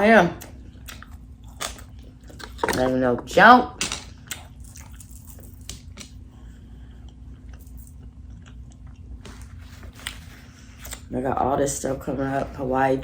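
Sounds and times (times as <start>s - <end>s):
chewing food: 0.4s - 2.8s, 4.2s - 6.2s, 6.9s - 11.1s.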